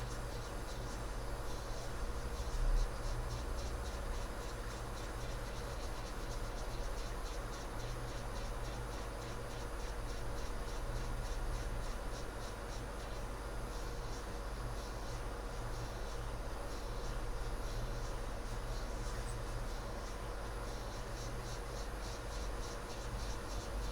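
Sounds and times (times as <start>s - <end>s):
low mains hum: 0.0s - 23.9s.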